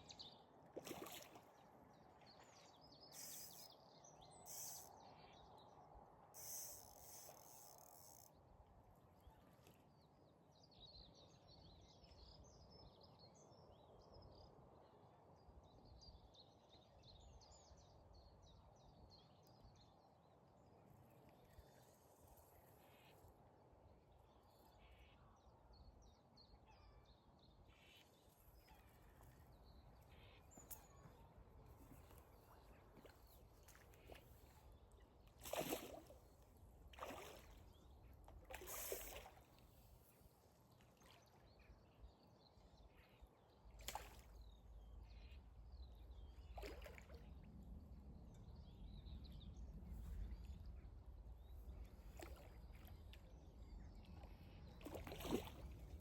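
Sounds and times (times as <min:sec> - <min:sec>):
faint birdsong: 0:00.0 - 0:08.3, 0:09.1 - 0:56.0.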